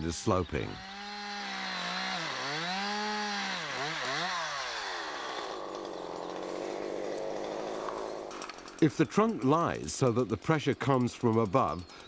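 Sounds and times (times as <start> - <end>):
chainsaw cutting wood: 0.8 - 9.6.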